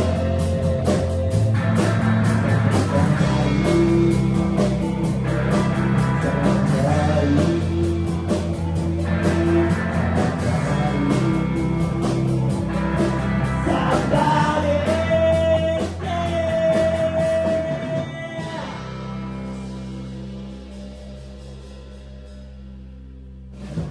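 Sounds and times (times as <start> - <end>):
bass guitar: 0.0 - 23.9
drums: 0.0 - 23.9
electric guitar: 0.0 - 23.9
person singing: 2.6 - 19.3.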